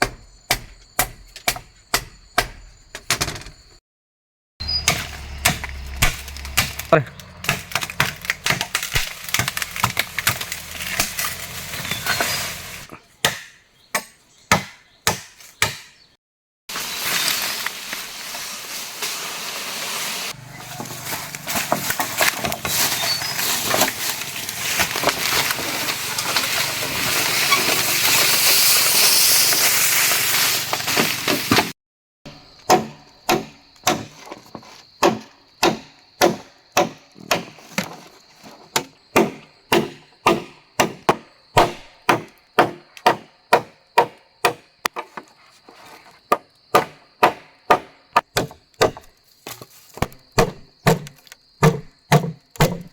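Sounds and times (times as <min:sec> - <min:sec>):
chopping strikes on wood: 0:00.0 - 0:02.7, 0:04.8 - 0:11.5, 0:13.2 - 0:16.0, 0:32.7 - 0:34.2, 0:35.0 - 0:37.9, 0:38.8 - 0:45.0, 0:46.3 - 0:49.1, 0:50.0 - 0:52.9
rough chopping noise: 0:04.6 - 0:16.0, 0:38.8 - 0:45.0, 0:46.3 - 0:49.2, 0:50.0 - 0:52.9.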